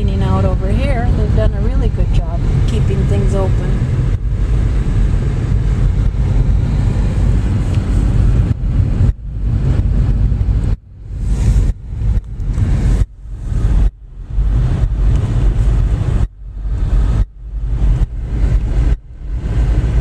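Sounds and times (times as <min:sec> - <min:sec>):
car interior low rumble: 0:00.0 - 0:20.0.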